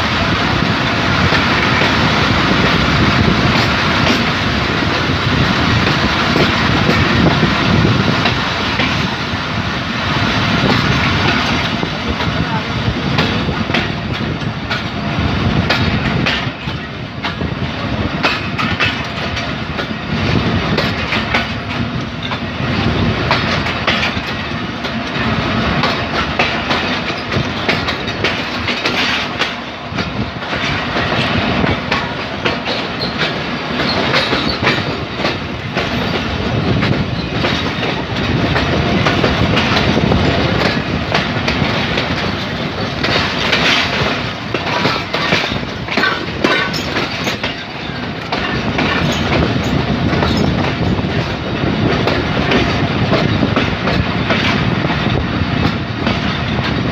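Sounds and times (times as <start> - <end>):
train coaches rumbling past: 0.0 - 56.9
wheels clattering over rail joints: 18.2 - 56.9.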